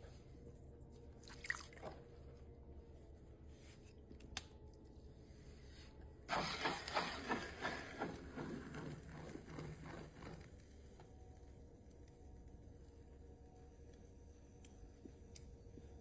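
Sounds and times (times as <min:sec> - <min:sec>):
potter's wheel humming: 0:06.3 - 0:13.2.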